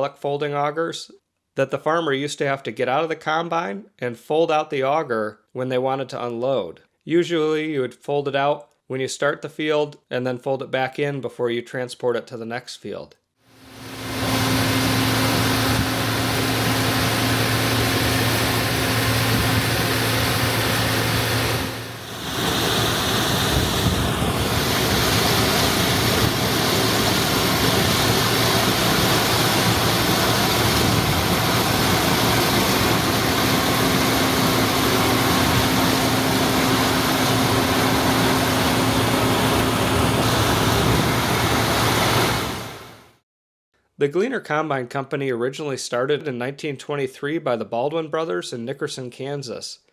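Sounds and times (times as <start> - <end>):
combine harvester running: 13.7 - 43.0.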